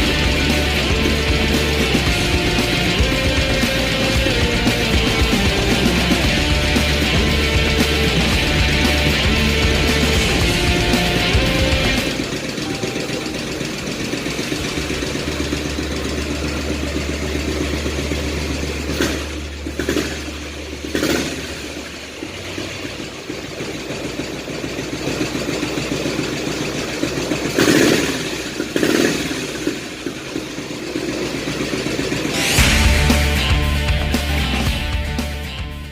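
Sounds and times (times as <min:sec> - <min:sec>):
motorcycle engine revving: 0:00.0 - 0:35.9.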